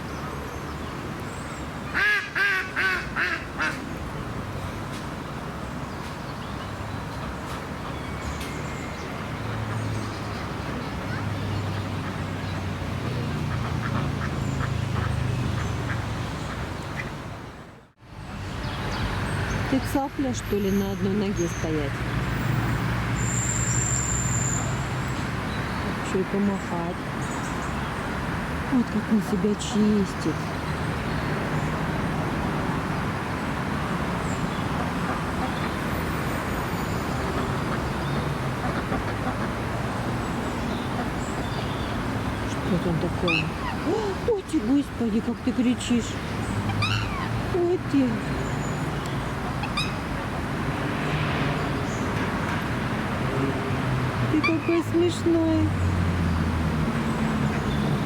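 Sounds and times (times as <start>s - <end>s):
distant traffic hum: 0.0s - 58.0s
ducks quacking: 10.7s - 17.2s, 37.3s - 39.6s.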